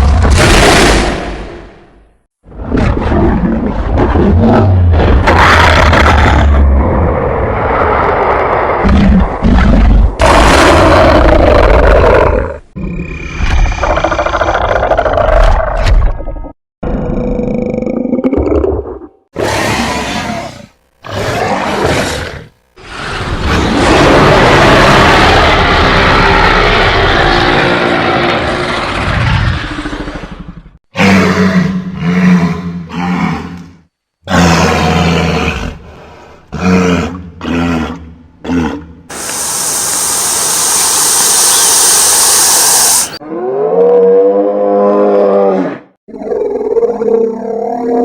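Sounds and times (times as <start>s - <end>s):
creature roar: 16.8s - 30.4s, 36.6s - 48.0s
creature hiss: 39.1s - 43.2s.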